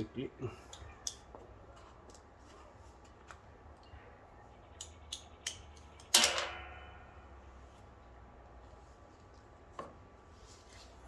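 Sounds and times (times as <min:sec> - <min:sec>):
loud metallic clank: 0:06.2 - 0:06.9.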